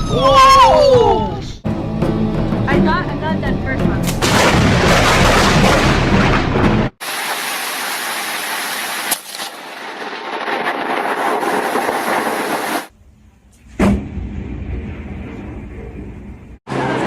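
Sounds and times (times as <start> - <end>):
sharp crack: 4.0 - 6.5, 7.1 - 12.9
thunder rumbling: 4.2 - 12.9
rain hiss: 7.0 - 12.9.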